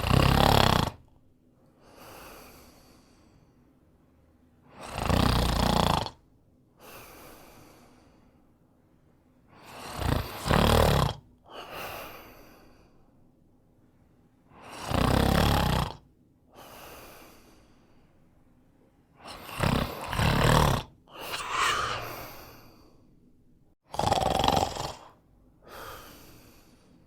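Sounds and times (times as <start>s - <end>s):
man snoring: 0.0s - 1.1s, 4.7s - 6.2s, 9.6s - 11.2s, 14.6s - 16.0s, 19.2s - 22.8s, 23.9s - 26.7s.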